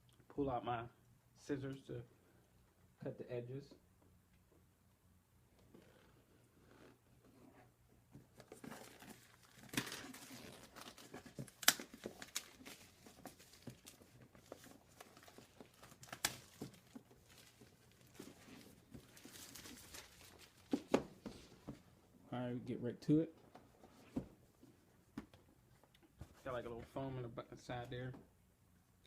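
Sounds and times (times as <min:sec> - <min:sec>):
plastic packaging crinkling and tearing: 0:08.4 - 0:20.7.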